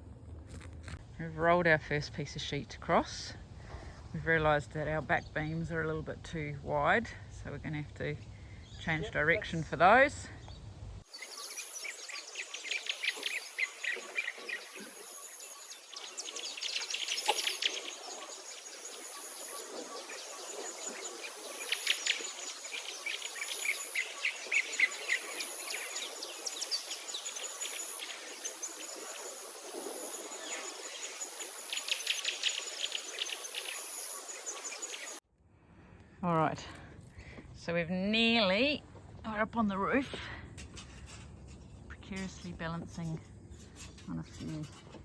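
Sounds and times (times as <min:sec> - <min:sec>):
birds chirping and trilling: 0:08.5 - 0:35.2.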